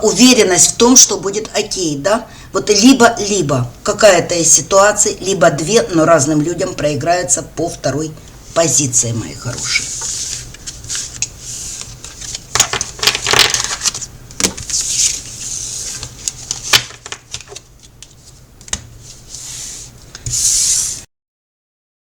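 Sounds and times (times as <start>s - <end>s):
cards being shuffled: 9.6s - 21.0s.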